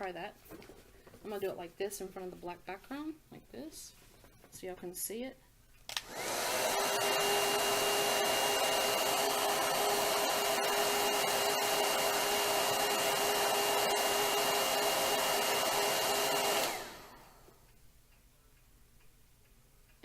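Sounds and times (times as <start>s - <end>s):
hair dryer air rush: 5.9s - 17.6s.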